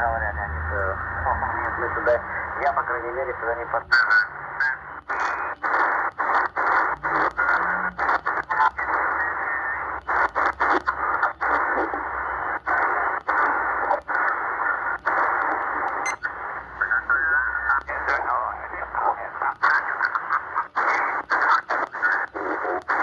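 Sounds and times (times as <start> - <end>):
radio static hiss: 0.7 - 23.0.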